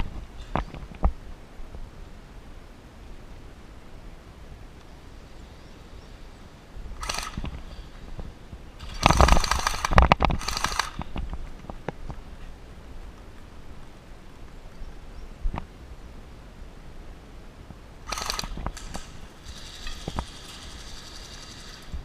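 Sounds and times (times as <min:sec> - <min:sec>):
airsoft rifle bursts: 0:07.0 - 0:07.5, 0:08.8 - 0:11.1, 0:18.1 - 0:22.0
gearbox motor whine: 0:19.4 - 0:22.0.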